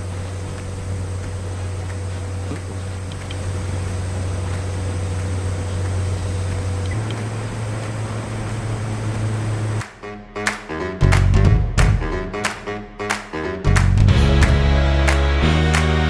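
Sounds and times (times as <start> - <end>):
fan motor humming: 0.0 - 9.8
hiss of moving air: 0.0 - 9.8.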